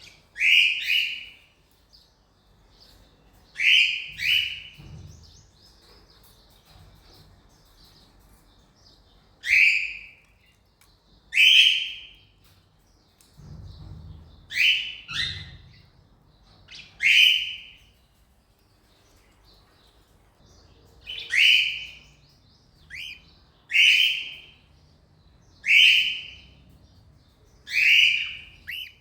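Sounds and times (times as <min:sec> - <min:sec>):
cockatiels calling: 0:00.0 - 0:01.4, 0:03.6 - 0:04.9, 0:11.3 - 0:12.2, 0:14.5 - 0:15.9, 0:16.7 - 0:17.8, 0:21.0 - 0:22.0, 0:22.9 - 0:24.6, 0:25.6 - 0:26.5, 0:27.6 - 0:29.0
soft chirping chatter: 0:00.0 - 0:29.0.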